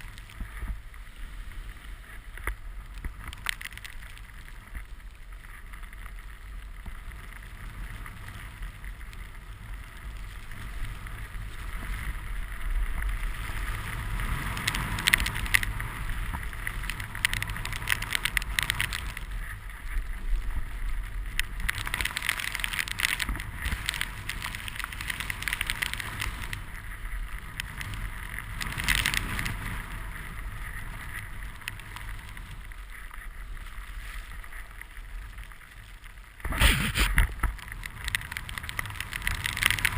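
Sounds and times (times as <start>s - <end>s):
snowboard hissing through snow: 36.5s - 37.4s.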